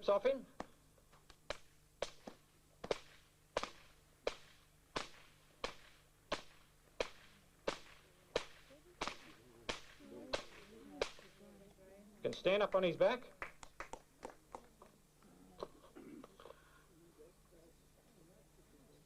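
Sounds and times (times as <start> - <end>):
whips cracking: 1.4 - 11.4.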